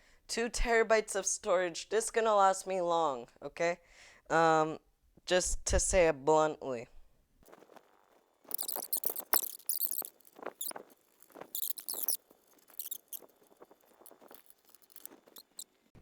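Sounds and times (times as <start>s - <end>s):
computer parts crinkling and clicking: 7.5s - 15.7s.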